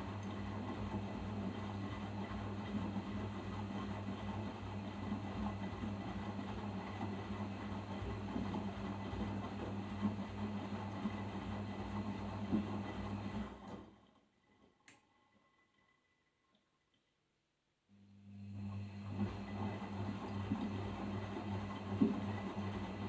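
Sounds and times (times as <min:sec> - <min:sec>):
water and laundry churning: 0:00.0 - 0:13.6, 0:19.0 - 0:23.0
washing machine drum motor humming: 0:00.0 - 0:13.7, 0:18.6 - 0:23.0.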